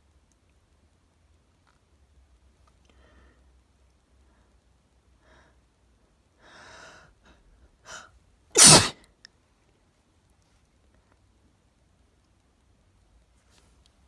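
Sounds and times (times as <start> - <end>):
woman sneezing: 8.6 - 9.0.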